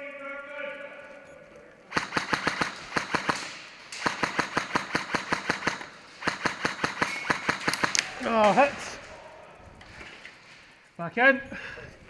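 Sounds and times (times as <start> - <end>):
airsoft gun firing full auto: 1.9 - 8.4.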